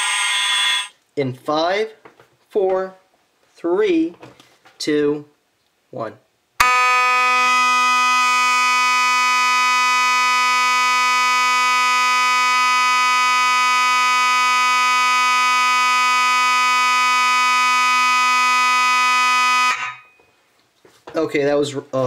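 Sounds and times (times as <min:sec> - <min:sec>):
fire alarm horn tone: 0:00.0 - 0:00.9, 0:06.6 - 0:20.2.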